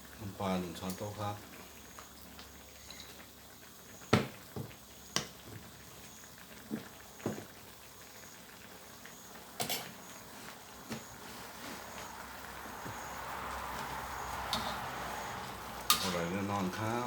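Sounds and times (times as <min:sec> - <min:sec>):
faint steady background noise: 0:00.0 - 0:17.0.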